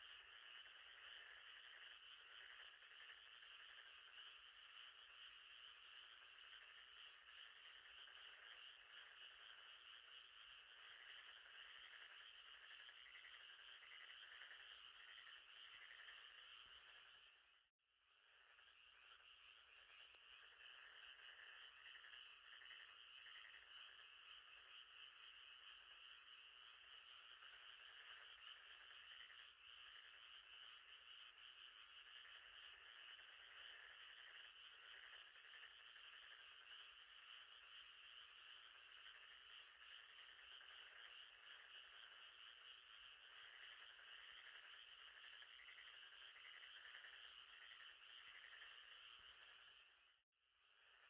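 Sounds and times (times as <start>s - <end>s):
frogs calling: 0.0s - 17.6s, 18.2s - 50.1s.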